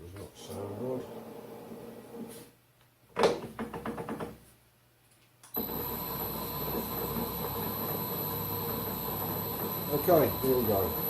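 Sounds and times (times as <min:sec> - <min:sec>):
lathe running with high whine: 0:05.6 - 0:11.0.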